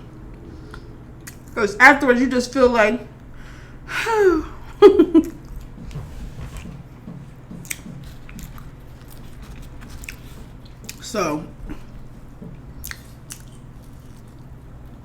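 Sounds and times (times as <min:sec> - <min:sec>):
person biting and chewing food: 0:07.5 - 0:11.0, 0:11.6 - 0:15.0
wet mouth clicks: 0:12.8 - 0:14.5.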